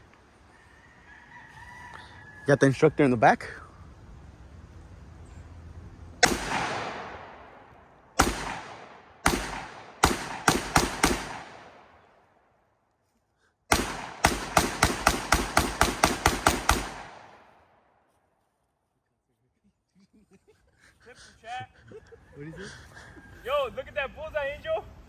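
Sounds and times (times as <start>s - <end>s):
gunshots with ringing echo: 6.2s - 12.4s, 13.7s - 17.9s.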